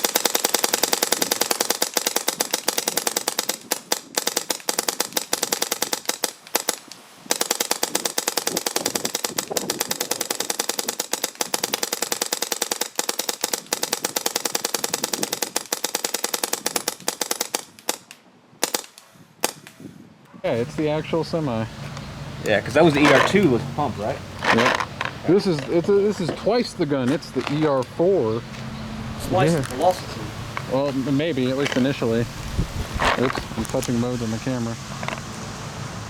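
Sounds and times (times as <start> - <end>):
paintball marker rapid firing: 0.0 - 19.8.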